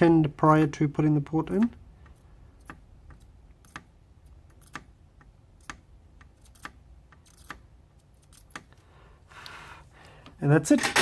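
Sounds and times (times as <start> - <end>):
soldering iron tip tapping pins: 1.5 - 8.8.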